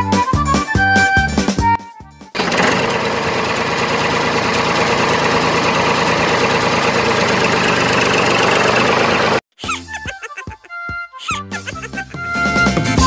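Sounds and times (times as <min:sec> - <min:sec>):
vehicle engine running: 0:02.4 - 0:09.4.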